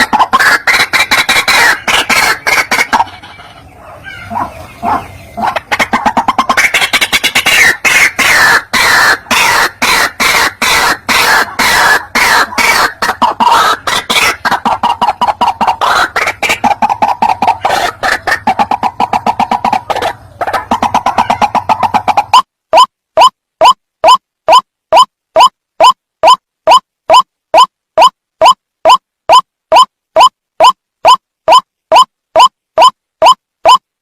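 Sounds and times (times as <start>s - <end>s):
waterhen calling harsh notes: 0.0s - 24.6s.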